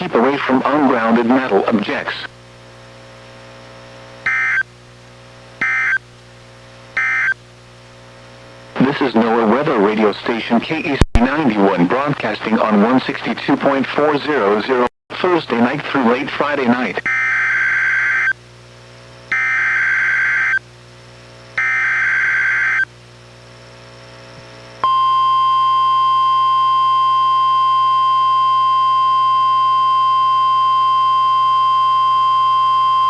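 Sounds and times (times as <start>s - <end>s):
steady warning alarm tone: 5.6s - 6.0s, 19.3s - 20.6s, 21.6s - 22.8s, 24.8s - 33.0s.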